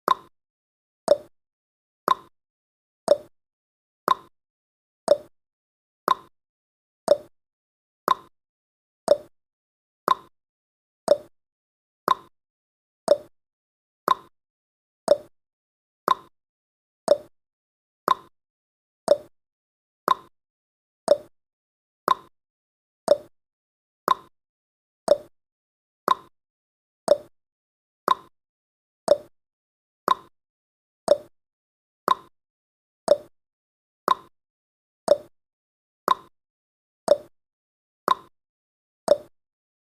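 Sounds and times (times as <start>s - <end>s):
timer ticking: 0.1s - 0.3s, 1.1s - 1.3s, 2.1s - 2.3s, 3.1s - 3.3s, 4.1s - 4.3s, 5.1s - 5.3s, 6.1s - 6.3s, 7.1s - 7.3s, 8.1s - 8.3s, 9.1s - 9.3s, 10.1s - 10.3s, 11.1s - 11.3s, 12.1s - 12.3s, 13.1s - 13.3s, 14.1s - 14.3s, 15.1s - 15.3s, 16.1s - 16.3s, 17.1s - 17.3s, 18.1s - 18.3s, 19.1s - 19.3s, 20.1s - 20.3s, 21.1s - 21.3s, 22.1s - 22.3s, 23.1s - 23.3s, 24.1s - 24.3s, 25.1s - 25.3s, 27.1s - 27.3s, 29.1s - 29.3s, 31.1s - 31.3s, 33.1s - 33.3s, 35.1s - 35.3s, 37.1s - 37.3s, 39.1s - 39.3s.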